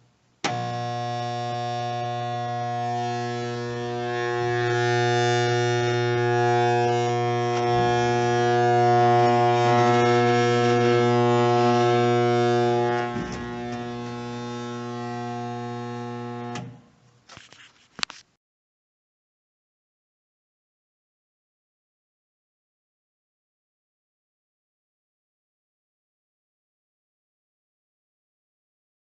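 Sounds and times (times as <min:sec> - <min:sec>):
stalled blower motor humming: 0:00.4 - 0:16.8.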